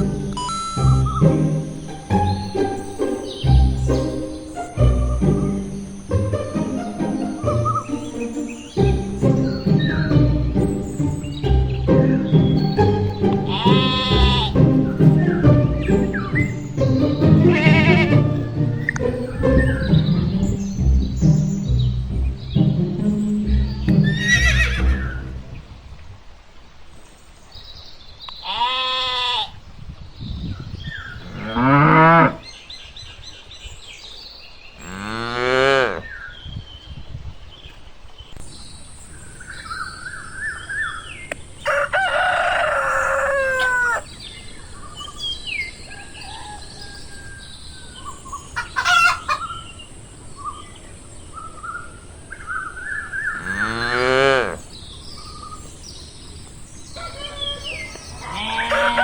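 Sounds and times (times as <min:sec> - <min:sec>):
bird chirps: 0:00.0 - 0:25.8, 0:37.6 - 0:59.0
steady high hiss: 0:00.0 - 0:29.2, 0:37.8 - 0:41.7
livestock calls: 0:11.4 - 0:20.6, 0:23.0 - 0:25.4, 0:28.4 - 0:29.6, 0:41.6 - 0:44.1, 0:48.6 - 0:49.7, 0:53.4 - 0:54.6, 0:57.0 - 0:59.0
rooster crowing: 0:41.6 - 0:44.1, 0:45.9 - 0:47.4, 0:57.0 - 0:59.0.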